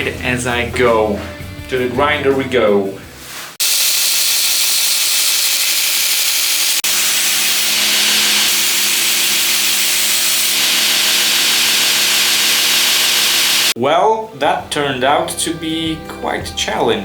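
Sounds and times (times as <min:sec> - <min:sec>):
belt grinder grinding knife blade: 0:04.3 - 0:13.7.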